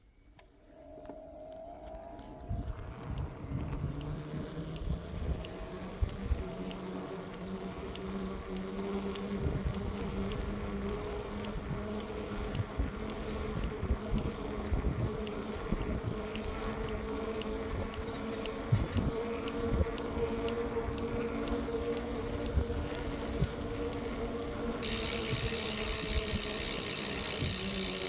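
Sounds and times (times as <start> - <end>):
rear wheel ticking: 2.4 - 28.0
electric motor hum: 20.1 - 28.0.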